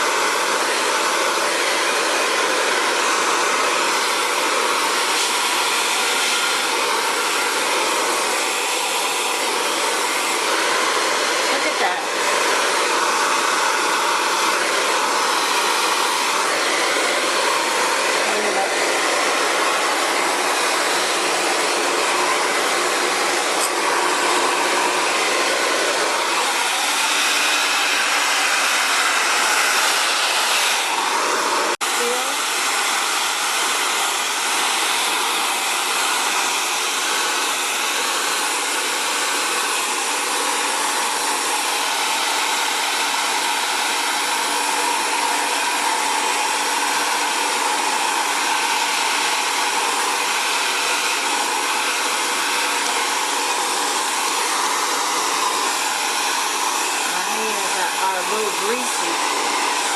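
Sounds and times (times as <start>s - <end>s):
hair dryer blowing: 0.0s - 59.9s.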